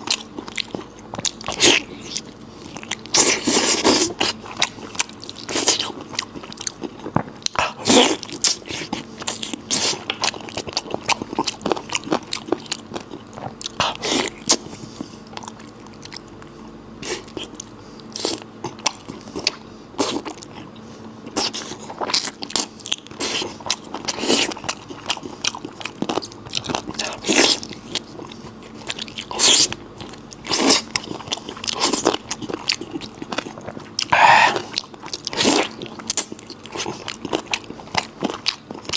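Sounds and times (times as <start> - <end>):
close chewing and biting: 0.0 - 38.9.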